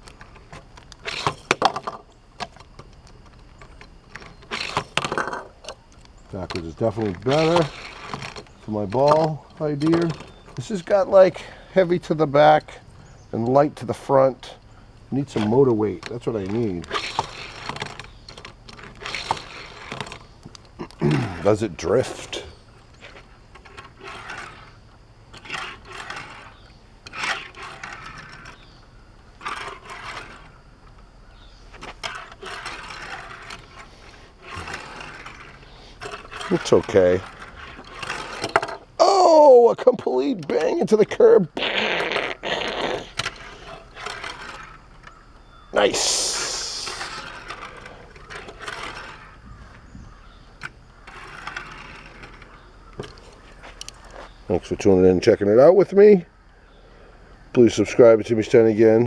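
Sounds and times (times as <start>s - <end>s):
toy car tires scraping: 0.0s - 14.6s, 15.2s - 55.0s.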